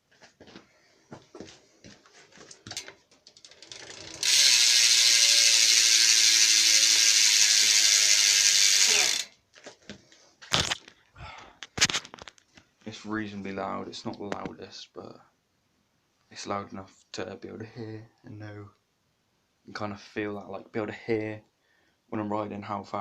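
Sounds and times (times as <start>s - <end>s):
bicycle hub ratcheting: 2.7s - 9.4s.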